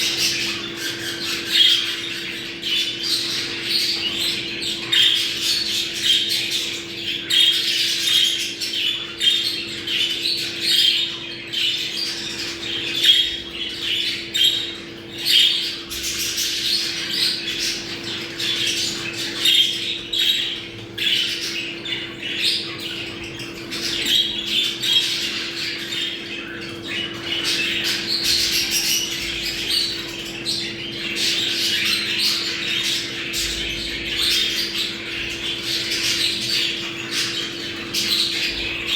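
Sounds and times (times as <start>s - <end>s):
budgerigars chattering and warbling: 0.0s - 38.9s.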